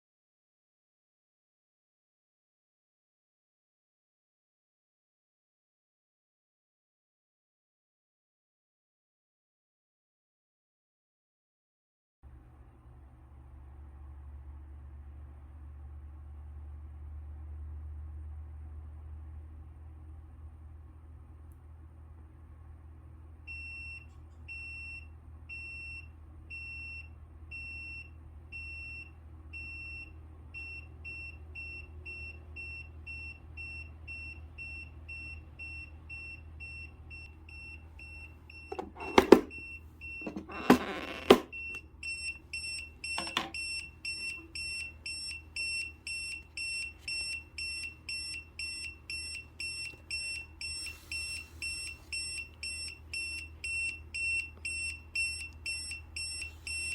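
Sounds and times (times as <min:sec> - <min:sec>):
high-pitched alarm beeps: 0:23.6 - 0:56.9.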